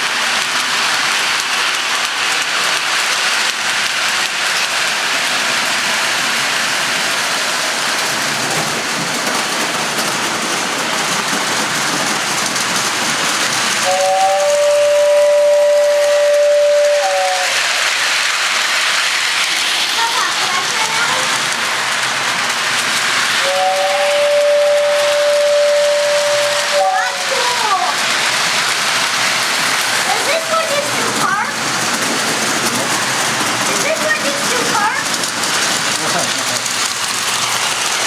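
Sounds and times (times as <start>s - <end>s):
train whistle two-tone chord: 13.8s - 17.8s, 23.4s - 27.3s.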